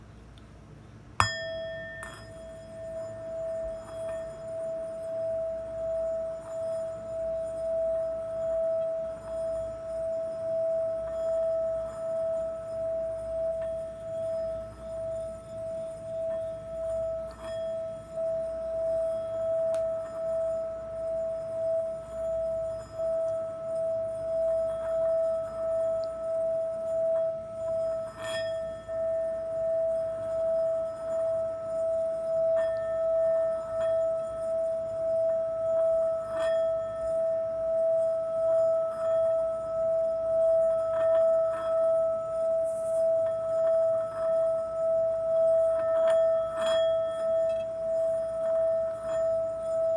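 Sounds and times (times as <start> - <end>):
singing bowl ringing tone: 1.2 - 49.9.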